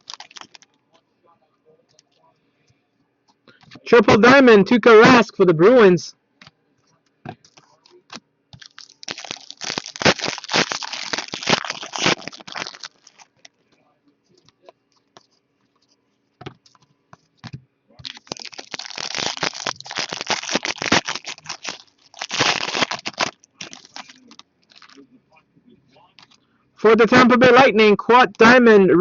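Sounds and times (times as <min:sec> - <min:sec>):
foil wrappers crinkling and tearing: 0:00.0 - 0:00.7, 0:08.6 - 0:13.6, 0:18.0 - 0:25.0
cards being handled: 0:07.4 - 0:13.6, 0:14.3 - 0:25.0.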